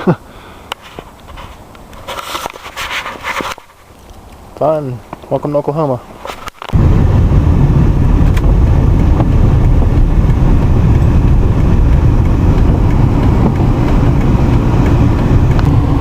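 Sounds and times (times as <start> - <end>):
car engine and tyres rumbling: 0.1 - 16.0.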